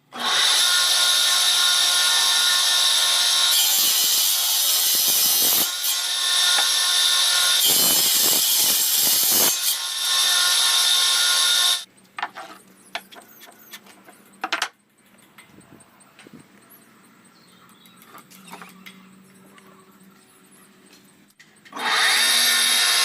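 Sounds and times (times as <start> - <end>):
power tool cutting wood: 0.1 - 11.9, 21.7 - 23.0.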